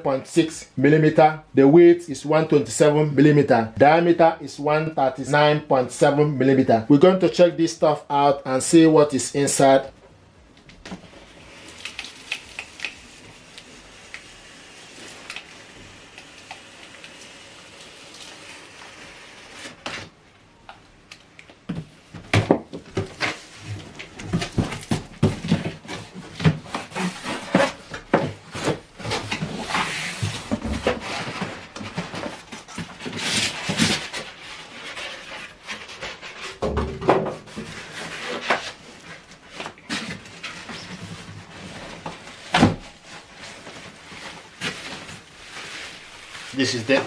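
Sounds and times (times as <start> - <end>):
packaging rustling: 10.8 - 20.2, 37.6 - 47.0
cardboard knocks and scrapes: 21.7 - 38.8.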